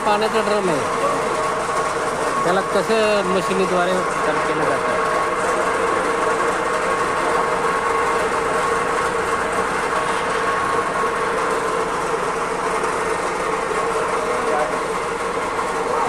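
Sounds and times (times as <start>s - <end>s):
machine running with whine: 0.0s - 16.0s.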